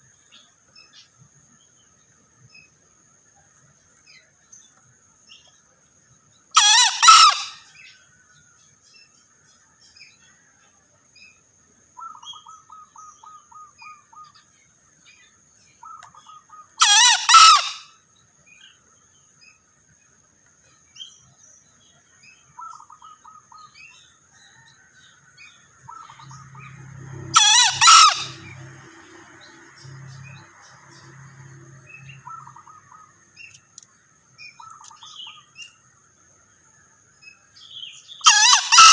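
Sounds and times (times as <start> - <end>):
junglefowl crowing: 6.6 - 7.8, 15.8 - 17.9, 24.4 - 28.7, 38.2 - 38.9.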